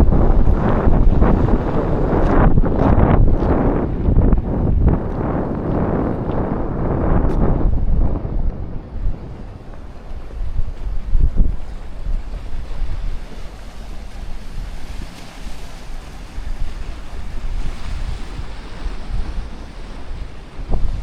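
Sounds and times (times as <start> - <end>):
sea waves washing on shore: 0.0 - 21.0
wind buffeting microphone: 0.0 - 21.0.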